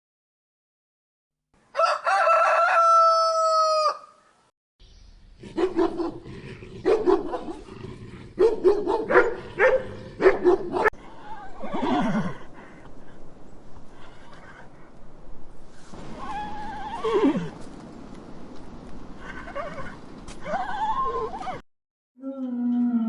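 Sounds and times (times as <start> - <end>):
rooster crowing: 1.7 - 4.3
animal call falling in pitch: 16.1 - 17.5.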